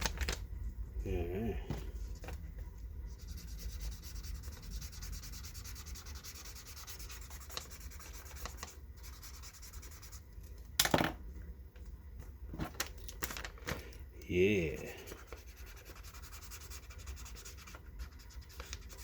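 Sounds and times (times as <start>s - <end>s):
paper and packaging rustling: 0.0s - 0.4s, 12.6s - 14.0s.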